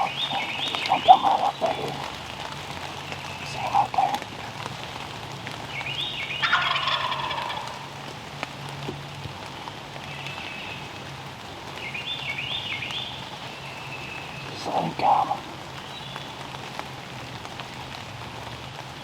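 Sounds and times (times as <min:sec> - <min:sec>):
turkey gobbling: 0:00.0 - 0:02.1, 0:05.8 - 0:08.0, 0:14.6 - 0:15.6.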